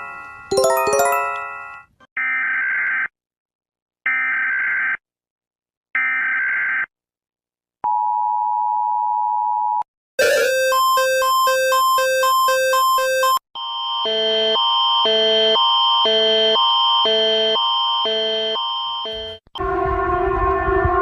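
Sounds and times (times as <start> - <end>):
chime-like jingle: 0.5 - 1.6
electronic melody: 0.5 - 1.8.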